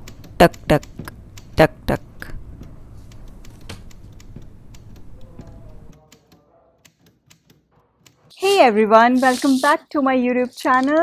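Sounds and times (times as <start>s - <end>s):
manual typewriter keys clacking: 0.0s - 8.4s.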